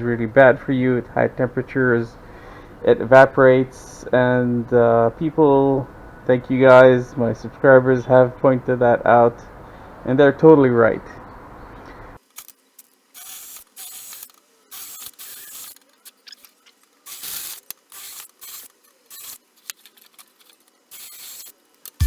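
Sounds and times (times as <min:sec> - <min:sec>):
tool scraping and clicking on metal: 0:12.3 - 0:22.0.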